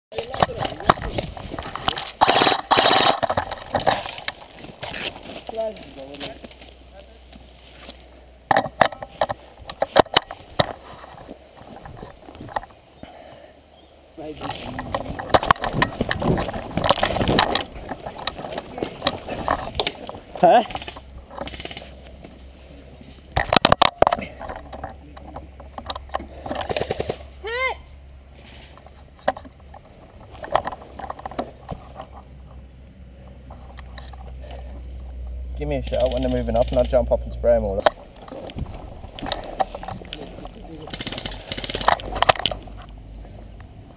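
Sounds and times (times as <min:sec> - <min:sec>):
sharp clicks and knocks: 0:08.5 - 0:12.8, 0:14.4 - 0:22.4, 0:23.3 - 0:27.2, 0:28.8 - 0:32.6, 0:37.8 - 0:43.0.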